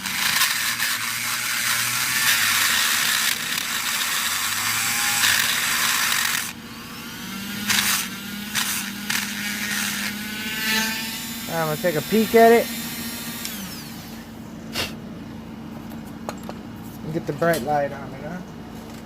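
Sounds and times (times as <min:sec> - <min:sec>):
drill grinding through metal: 0:00.0 - 0:15.0.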